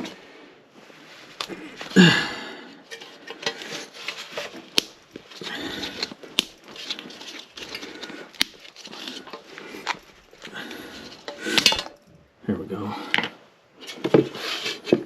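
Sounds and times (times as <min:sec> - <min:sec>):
metal scraping: 0:02.8 - 0:12.1.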